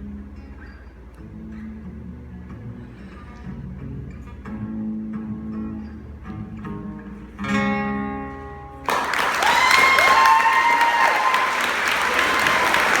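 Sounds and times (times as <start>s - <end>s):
acoustic guitar: 0.0s - 8.9s
audience applause: 8.9s - 13.0s.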